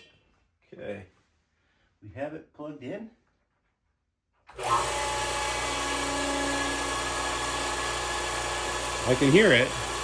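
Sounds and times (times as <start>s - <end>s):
air compressor running: 4.5s - 10.0s.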